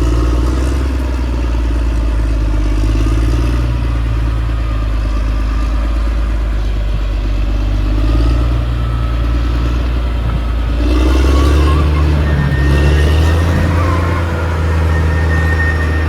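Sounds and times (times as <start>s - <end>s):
bulldozer diesel engine running: 0.0s - 16.0s.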